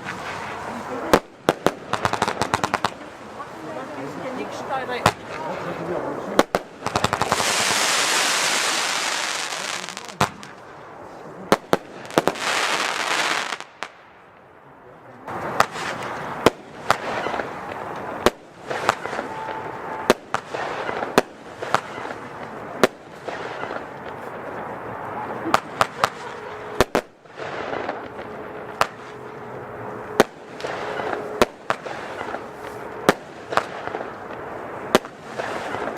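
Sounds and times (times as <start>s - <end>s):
firework bangs: 0.0s - 3.6s, 4.3s - 14.4s, 15.3s - 35.9s
firework report shots: 0.0s - 14.6s, 15.3s - 35.9s
firework hissing bursts: 6.6s - 10.6s, 11.7s - 13.9s.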